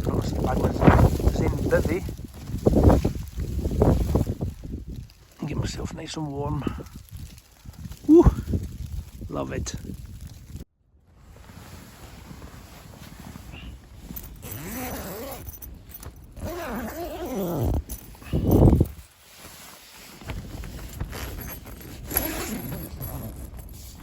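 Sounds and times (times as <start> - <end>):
fabric rustling: 0.0 - 5.6, 10.1 - 24.0
man groaning: 8.1 - 8.4.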